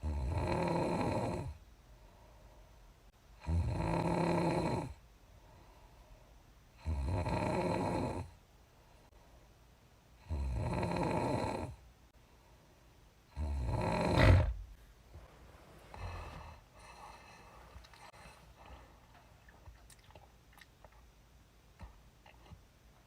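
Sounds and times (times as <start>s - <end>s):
woman snoring with puffing lips: 0.0s - 1.6s, 3.4s - 5.0s, 6.8s - 8.3s, 10.3s - 11.8s, 13.4s - 14.8s.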